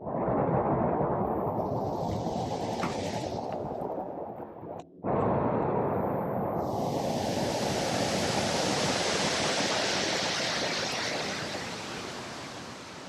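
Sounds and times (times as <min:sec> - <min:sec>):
waterfall rushing water: 0:06.6 - 0:13.0.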